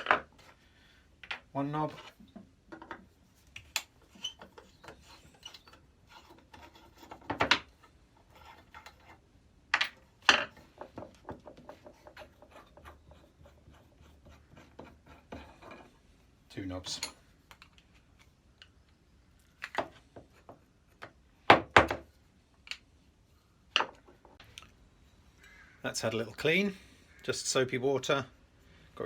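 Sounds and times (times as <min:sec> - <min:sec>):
small clicks and knocks of metal parts: 0:01.2 - 0:01.5, 0:02.3 - 0:08.0, 0:16.9 - 0:21.2, 0:22.5 - 0:22.9.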